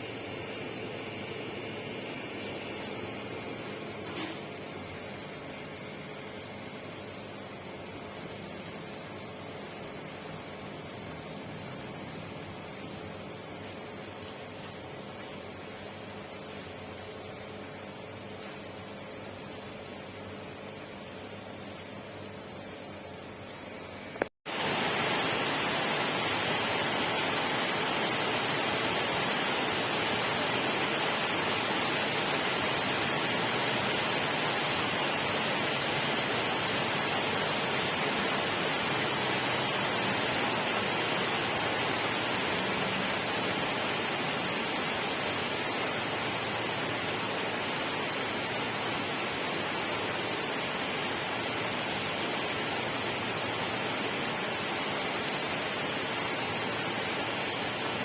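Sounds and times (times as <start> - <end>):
water rushing: 24.5 - 48.3.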